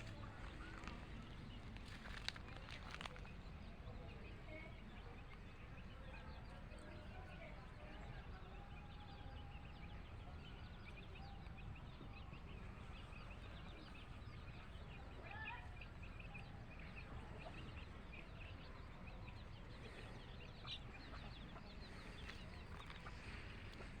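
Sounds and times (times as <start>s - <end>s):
chicks peeping: 8.7s - 24.0s.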